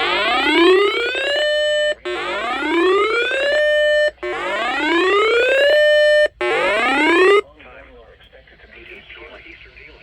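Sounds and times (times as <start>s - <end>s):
siren-like alarm whoop: 0.0s - 7.4s.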